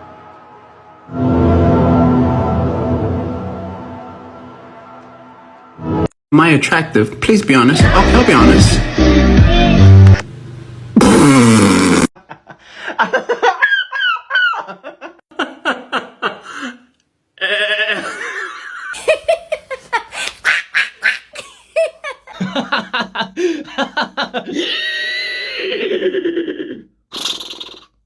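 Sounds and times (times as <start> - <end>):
laughter in quick bursts: 18.0 - 24.8.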